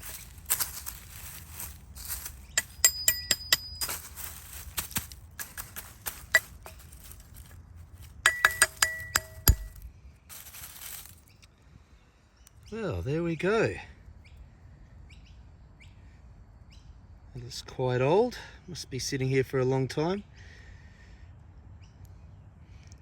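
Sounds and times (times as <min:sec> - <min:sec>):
sharp metallic clinks: 0:00.0 - 0:11.2
metal hand tool digging in soil: 0:00.0 - 0:11.3.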